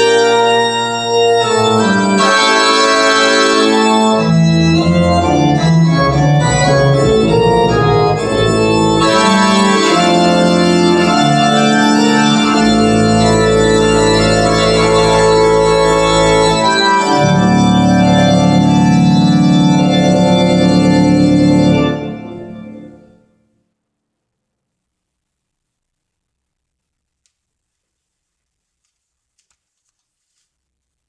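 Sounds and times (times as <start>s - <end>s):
organ music with held chords: 0.0s - 23.5s.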